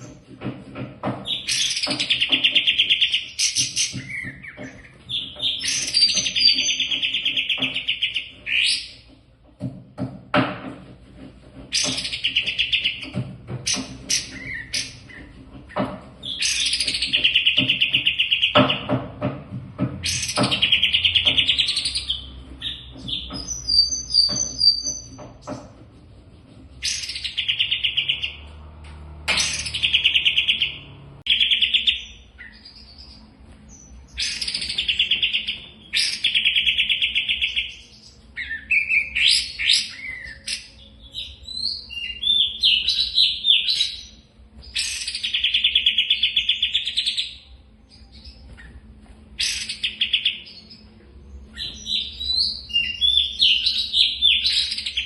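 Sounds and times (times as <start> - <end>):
bird sharp chips: 26.8 - 28.4, 29.3 - 33.1.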